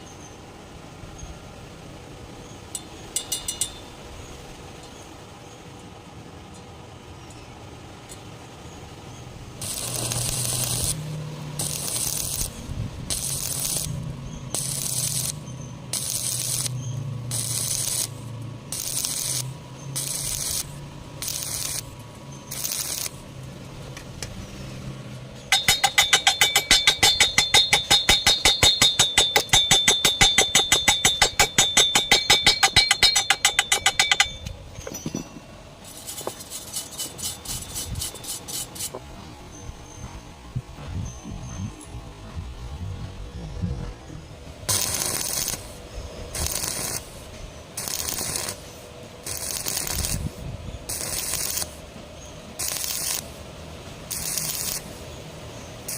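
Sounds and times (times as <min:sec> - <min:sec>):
short hissing bursts: 0:09.5 - 0:23.3, 0:35.8 - 0:39.0, 0:44.7 - 0:51.9, 0:52.6 - 0:55.2
low hum: 0:39.0 - 0:47.7.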